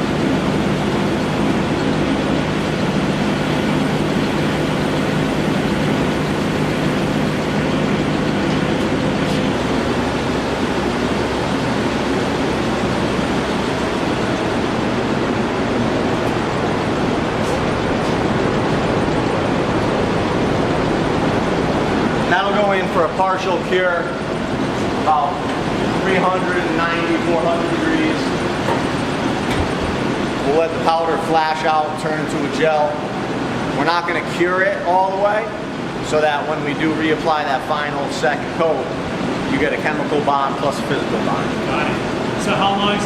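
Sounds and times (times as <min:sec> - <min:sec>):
low hum: 0:00.0 - 0:31.5
extraction fan running: 0:00.0 - 0:43.0.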